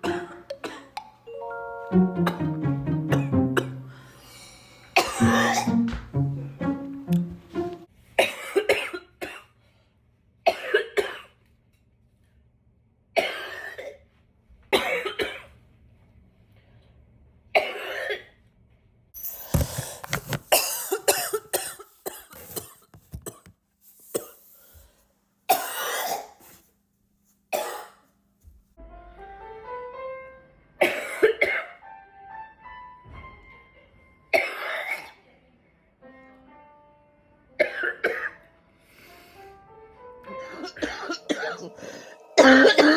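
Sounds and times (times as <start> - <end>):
person coughing: 0.0 - 1.0, 3.1 - 4.0, 5.0 - 5.8, 8.2 - 9.5, 10.5 - 11.3, 20.5 - 23.4, 25.5 - 26.4, 30.8 - 31.7, 37.6 - 38.3, 40.4 - 42.9
music with rising notes: 1.3 - 4.1, 5.2 - 7.9, 40.4 - 42.8.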